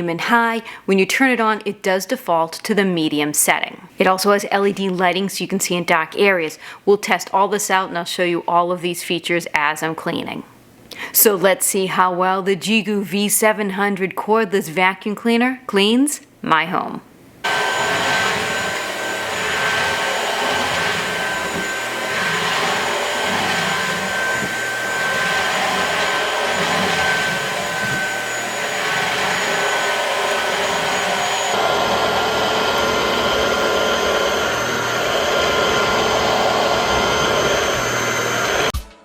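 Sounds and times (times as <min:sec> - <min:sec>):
stick vacuum whining: 0:17.4 - 0:38.8.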